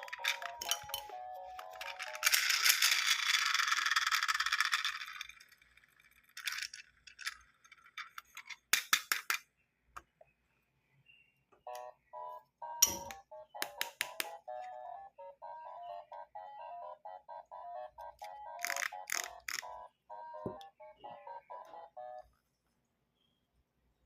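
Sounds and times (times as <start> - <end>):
electronic melody notes: 0.0 - 2.2, 11.6 - 18.6
plastic toy pieces rattling: 0.0 - 9.4, 18.2 - 19.8
clicks and taps of pieces: 8.0 - 9.4, 12.8 - 14.7, 18.2 - 19.7.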